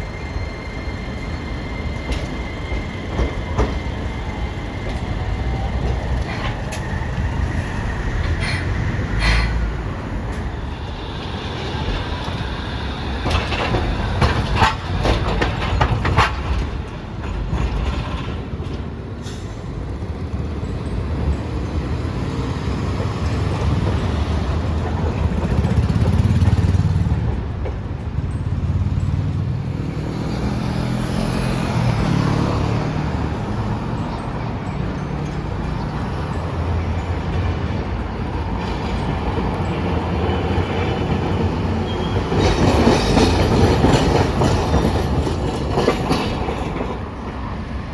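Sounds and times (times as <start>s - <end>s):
sharp tram clacks: 0.0s - 47.9s
vehicles rumbling past: 21.6s - 47.9s.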